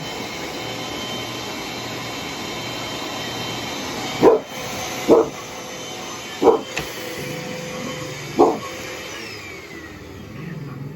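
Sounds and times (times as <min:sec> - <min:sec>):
vacuum cleaner running: 0:00.0 - 0:10.9
dog barking: 0:04.2 - 0:05.6, 0:06.2 - 0:06.8, 0:08.3 - 0:08.8.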